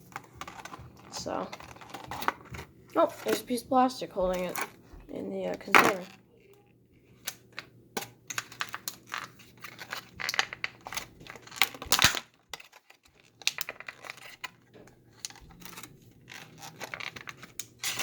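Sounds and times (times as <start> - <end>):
plastic packaging crinkling: 0.0 - 3.6, 8.3 - 18.0.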